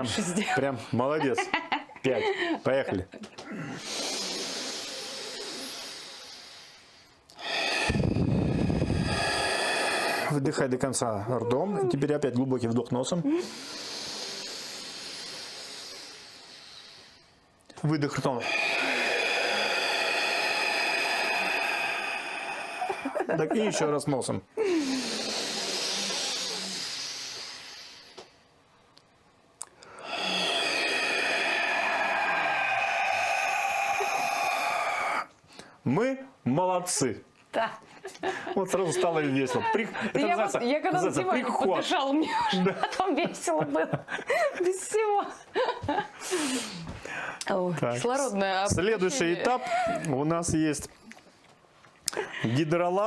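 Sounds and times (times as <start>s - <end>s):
deep breathing: 3.4s - 10.4s, 13.3s - 17.4s, 18.2s - 23.8s, 24.6s - 28.4s, 29.8s - 35.8s, 46.1s - 47.5s
deep inhale through the nose: 3.6s - 10.4s, 13.4s - 17.4s, 18.4s - 23.2s, 24.6s - 28.4s, 29.8s - 35.8s, 46.2s - 47.4s.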